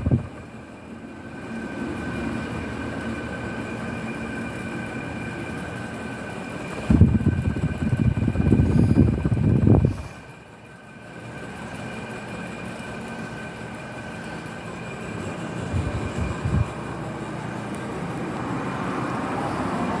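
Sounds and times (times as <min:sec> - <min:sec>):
fast low rattling rumble: 0:00.0 - 0:00.6, 0:04.8 - 0:10.3, 0:13.4 - 0:18.6
electric fan motor whining: 0:00.0 - 0:20.0.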